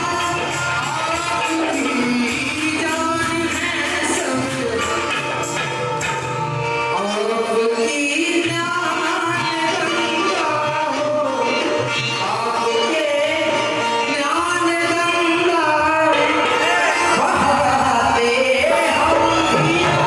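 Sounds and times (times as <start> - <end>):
person singing folk song: 0.0 - 5.6
hand drum rhythm: 0.0 - 6.9, 16.3 - 20.0
instrumental accompaniment: 0.0 - 20.0.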